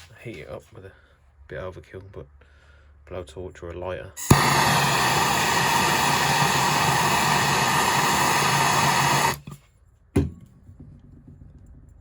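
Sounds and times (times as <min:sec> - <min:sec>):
blowtorch flame hissing: 0:04.2 - 0:09.6.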